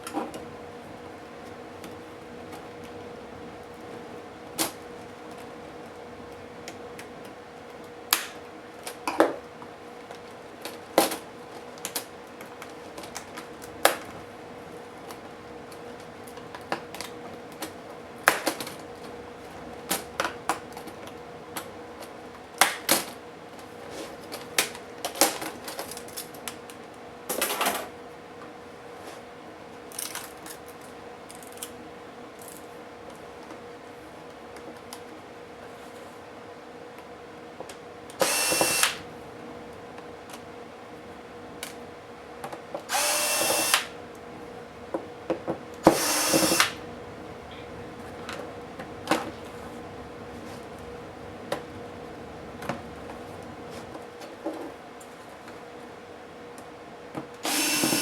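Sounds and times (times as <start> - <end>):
faint hum: 36.4 - 54.2.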